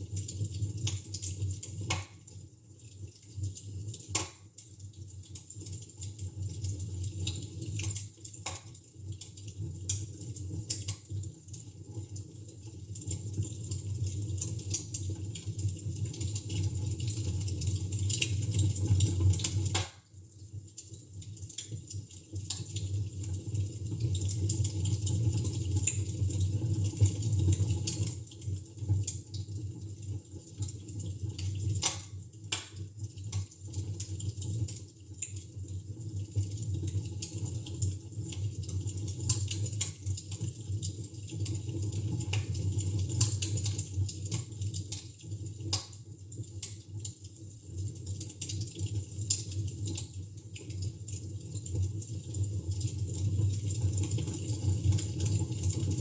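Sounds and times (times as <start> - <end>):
wood fire crackling: 0.1 - 56.0
sharp pops of fire: 1.9 - 2.2, 4.1 - 4.4, 19.7 - 20.0, 31.8 - 32.8.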